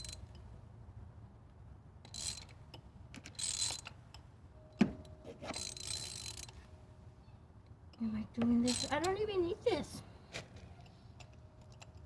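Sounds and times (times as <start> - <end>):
ratchet wrench clicking: 2.0 - 4.2, 5.5 - 6.6, 8.7 - 9.1.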